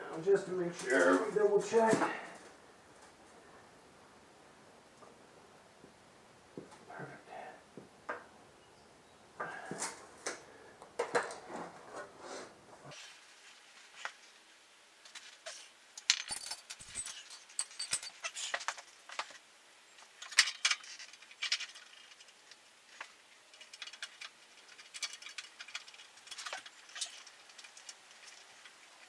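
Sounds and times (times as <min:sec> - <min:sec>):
metallic tools clinking: 0:16.0 - 0:18.7.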